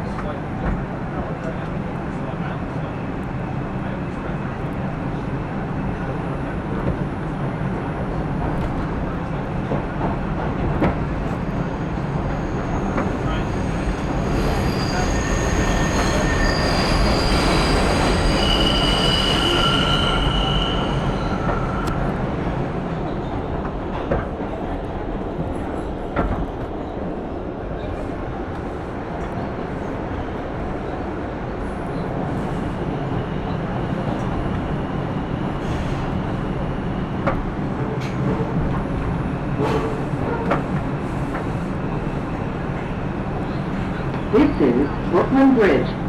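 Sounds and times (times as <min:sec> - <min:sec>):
subway train wheels rumbling: 0:00.0 - 0:46.0
high-pitched wheel squeal: 0:14.2 - 0:21.9.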